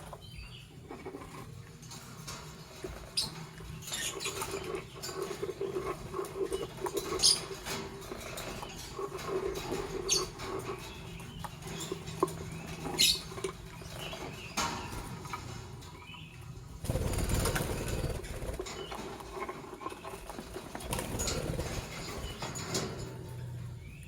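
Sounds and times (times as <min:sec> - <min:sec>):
birds scratching and pattering: 0:00.0 - 0:24.0
wings rustling and flapping: 0:16.6 - 0:23.5.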